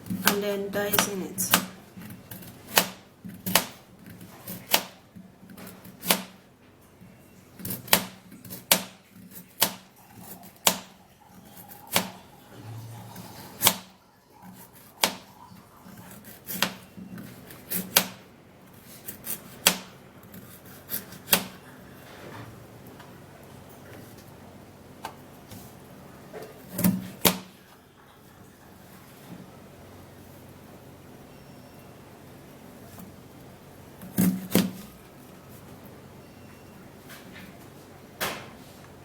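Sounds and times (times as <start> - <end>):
knife chopping carrot on board: 0.0 - 6.4, 7.6 - 11.0, 11.8 - 12.2, 14.8 - 15.3, 16.2 - 16.8, 17.5 - 18.2, 19.0 - 21.6, 26.6 - 27.5.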